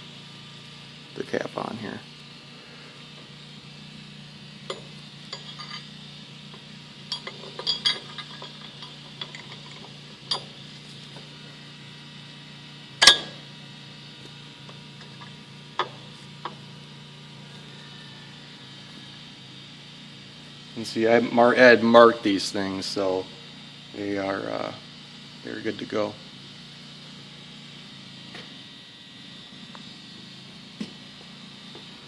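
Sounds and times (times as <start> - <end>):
steady low hum: 0.0 - 32.0
metal parts clinking: 4.7 - 5.9, 7.1 - 10.5
sharp metal clack: 13.0 - 13.4.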